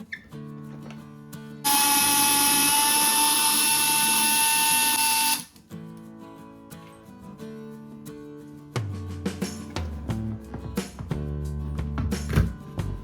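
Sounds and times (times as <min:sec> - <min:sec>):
guitar music: 0:00.0 - 0:13.0
electric drill whining: 0:01.7 - 0:05.5.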